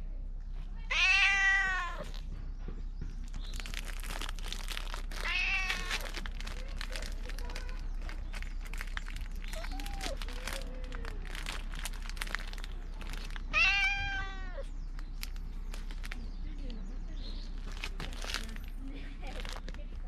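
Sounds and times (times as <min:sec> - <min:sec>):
cat meowing: 0:00.9 - 0:02.1, 0:05.2 - 0:06.1, 0:09.6 - 0:10.3, 0:13.5 - 0:14.7.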